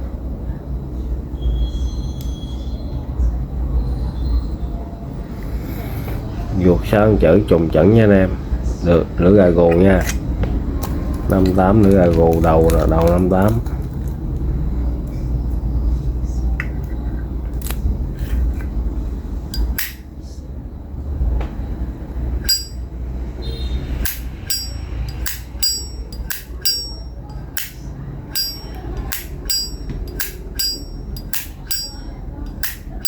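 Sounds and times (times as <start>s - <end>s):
lighter lid metallic clicks: 19.6s - 20.0s, 24.0s - 26.9s, 27.5s - 31.9s, 32.5s - 33.0s.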